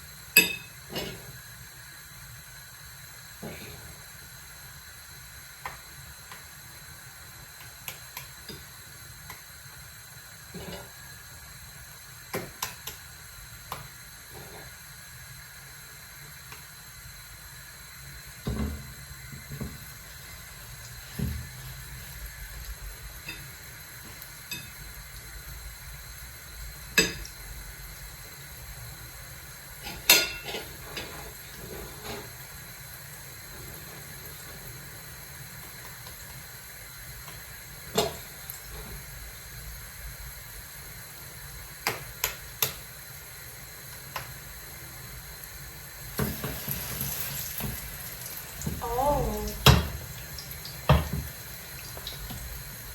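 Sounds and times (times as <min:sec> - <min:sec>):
oil sizzling in a pan: 0:00.0 - 0:52.9
utensils clinking against dishes: 0:00.4 - 0:01.2, 0:29.8 - 0:31.1.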